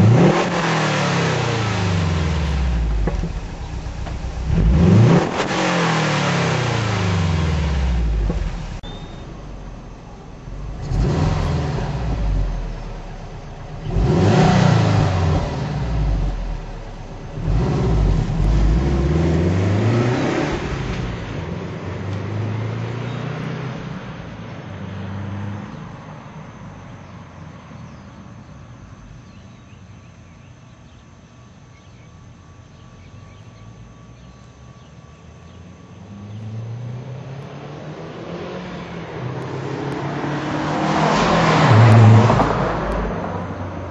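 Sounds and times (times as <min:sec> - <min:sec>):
car engine revving: 0:00.0 - 0:24.0, 0:36.0 - 0:43.9.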